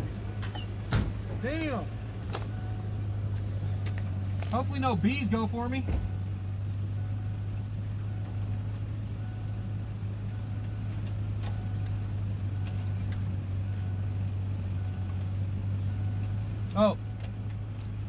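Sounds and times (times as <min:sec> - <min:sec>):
steady low hum: 0:00.0 - 0:18.0
metallic jingles: 0:02.7 - 0:09.9, 0:12.7 - 0:13.4.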